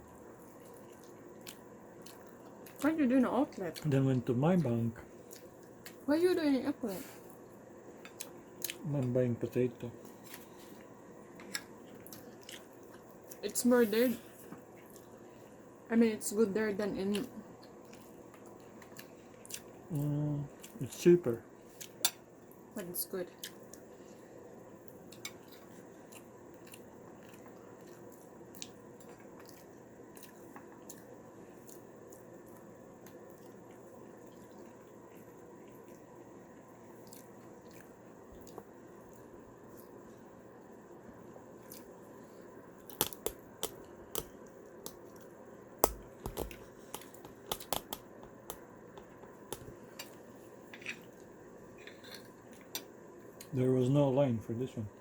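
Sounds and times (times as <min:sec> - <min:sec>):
person chewing: 0:00.4 - 0:02.8, 0:05.2 - 0:06.0, 0:08.0 - 0:08.9, 0:10.1 - 0:13.4, 0:17.2 - 0:20.8, 0:24.8 - 0:36.1, 0:36.9 - 0:40.2, 0:41.6 - 0:53.5.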